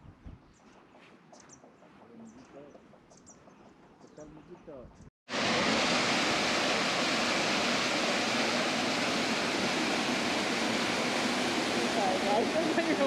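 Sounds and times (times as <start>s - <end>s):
fast-flowing water rushing: 5.3s - 13.0s.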